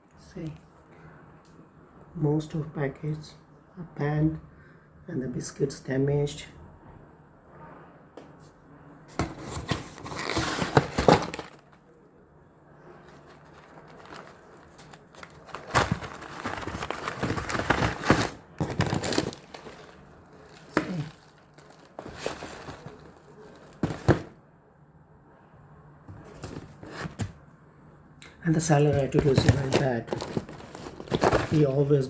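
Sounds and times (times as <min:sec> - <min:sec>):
plastic packets crinkling: 0:09.8 - 0:11.8, 0:13.0 - 0:24.3, 0:28.7 - 0:31.8.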